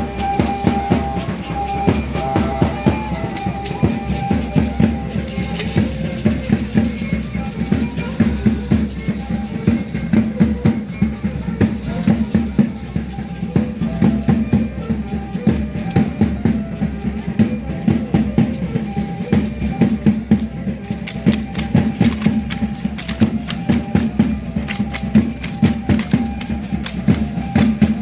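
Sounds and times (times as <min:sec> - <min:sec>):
drum beating fast rhythm: 0:00.0 - 0:28.0
violin playing: 0:00.0 - 0:28.0
rattles shaking: 0:20.7 - 0:27.8.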